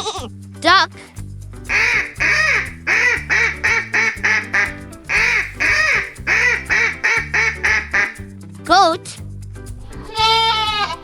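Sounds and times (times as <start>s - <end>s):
background music with low notes: 0.0s - 11.0s
duck quacking: 1.7s - 8.2s.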